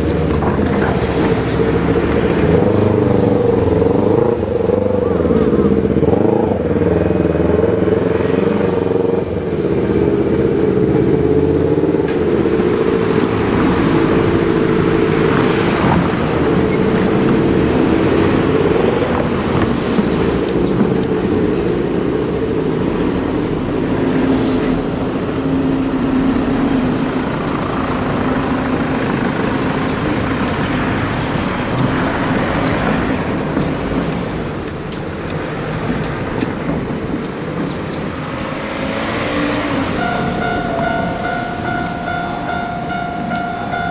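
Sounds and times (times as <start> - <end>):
vehicle hum: 0.0 - 43.9
low tone: 38.3 - 43.9.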